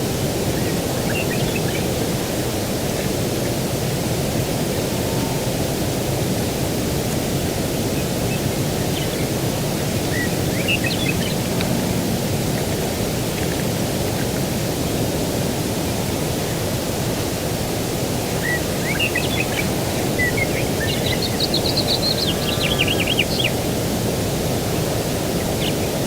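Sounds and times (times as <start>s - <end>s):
distant ocean surf: 0.0s - 26.0s
faint bird chirps: 18.4s - 23.7s.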